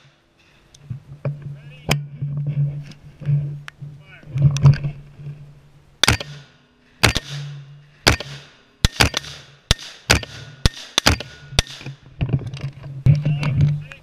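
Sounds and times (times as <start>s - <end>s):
rifle shots with echo: 6.0s - 12.0s.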